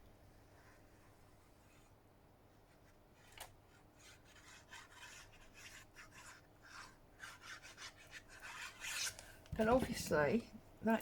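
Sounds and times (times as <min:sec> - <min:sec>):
rubbing on paper: 0:02.7 - 0:09.3.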